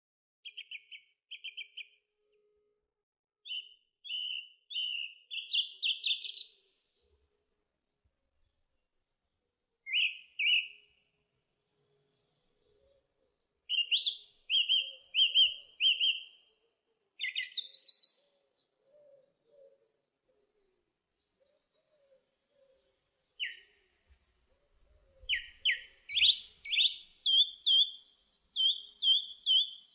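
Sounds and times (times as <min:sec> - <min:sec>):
sparrow chirping: 0:00.4 - 0:02.0, 0:03.4 - 0:07.0, 0:09.9 - 0:10.9, 0:13.7 - 0:16.5, 0:17.2 - 0:19.5, 0:21.2 - 0:23.8, 0:25.2 - 0:29.9.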